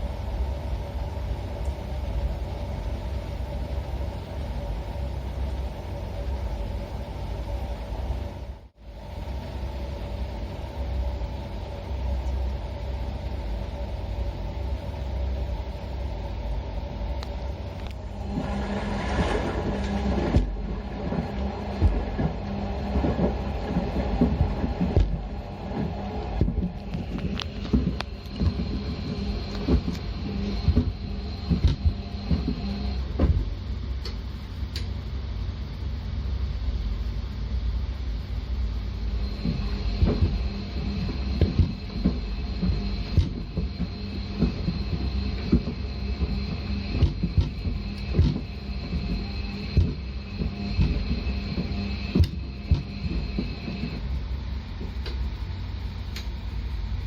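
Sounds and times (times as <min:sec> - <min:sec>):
faint whine: 0:00.0 - 0:57.0
washing machine rumbling: 0:00.0 - 0:57.0.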